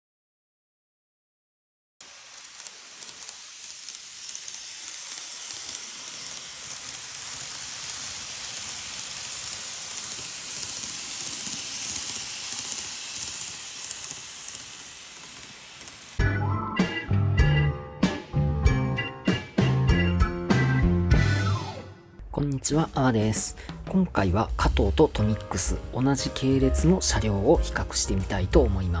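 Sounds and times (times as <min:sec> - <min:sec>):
model train rolling on track: 0:02.0 - 0:16.2, 0:23.0 - 0:29.0.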